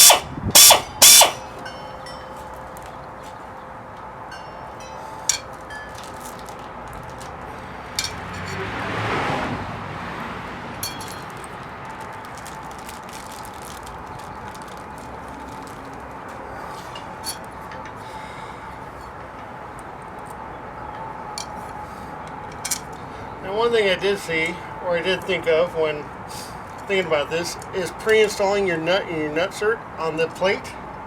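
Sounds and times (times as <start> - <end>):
steady background hum: 0.0 - 8.6, 10.7 - 31.0
metal hand tools clinking: 4.4 - 8.6, 10.8 - 11.6.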